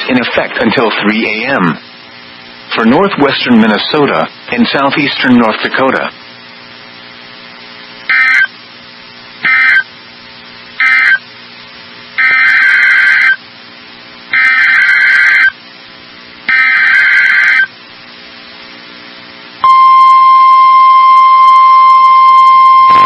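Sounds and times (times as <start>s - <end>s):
faint steady hum: 0.0s - 23.0s
digital data tone bursts: 8.1s - 8.5s, 9.4s - 9.9s, 10.8s - 11.2s, 12.2s - 13.4s, 16.5s - 17.7s, 19.6s - 23.0s.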